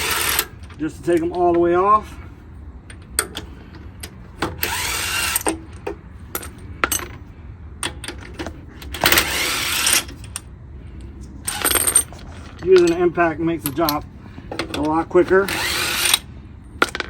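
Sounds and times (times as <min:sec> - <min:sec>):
impact wrench spinning: 0:04.6 - 0:05.6, 0:09.0 - 0:10.1, 0:15.4 - 0:16.2.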